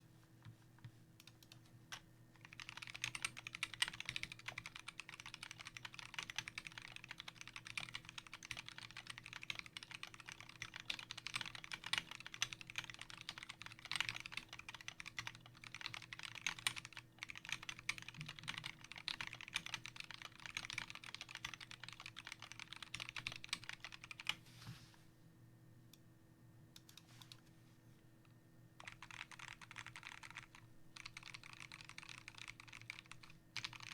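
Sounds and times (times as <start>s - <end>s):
mechanical keyboard typing: 2.4s - 24.4s, 28.8s - 33.9s.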